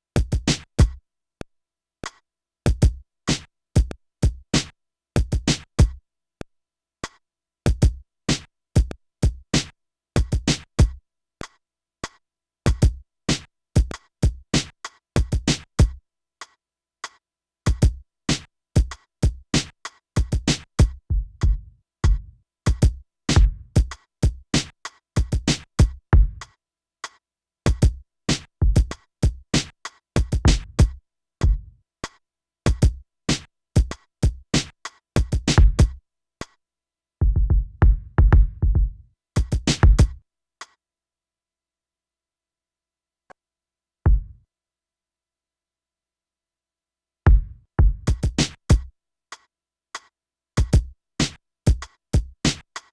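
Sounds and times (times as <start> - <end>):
hi-hat and snare hits: 0.3 - 0.9, 5.4 - 5.9, 9.6 - 10.9, 12.0 - 19.0, 19.6 - 21.0, 22.0 - 26.0, 27.0 - 34.0, 34.6 - 36.6, 39.4 - 40.8, 47.8 - 52.9
deep kick drums: 20.2 - 23.9, 26.2 - 26.4, 28.6 - 29.4, 30.2 - 31.7, 35.2 - 36.0, 37.2 - 40.2, 44.1 - 44.4, 47.3 - 48.8.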